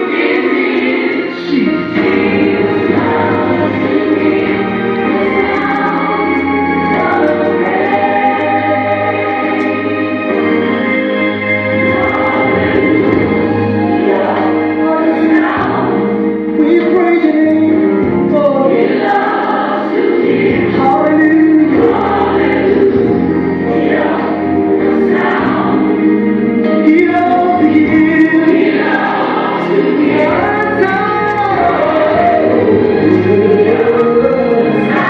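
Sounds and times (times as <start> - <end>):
gospel choir song with keyboard: 0.0 - 35.0.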